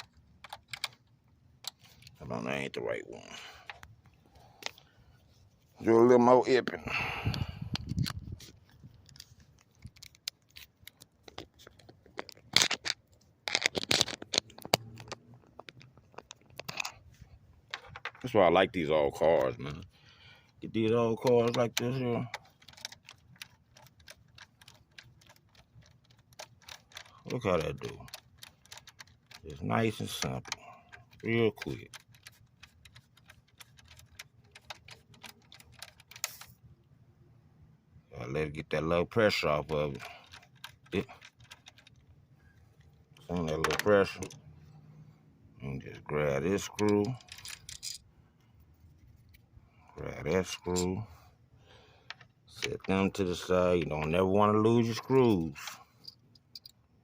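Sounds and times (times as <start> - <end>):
tools and metal parts clicking: 0.0 - 2.2, 9.0 - 17.0, 21.1 - 36.6, 46.5 - 48.1, 55.6 - 56.9.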